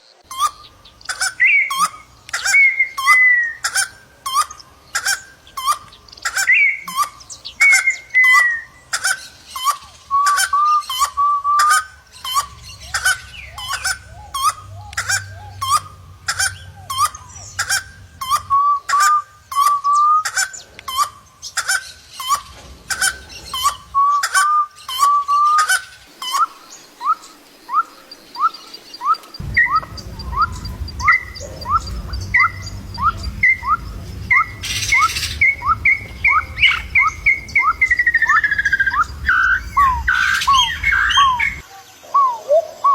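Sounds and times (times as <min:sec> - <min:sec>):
sliding whistled bird calls: 0:00.0 - 0:42.9.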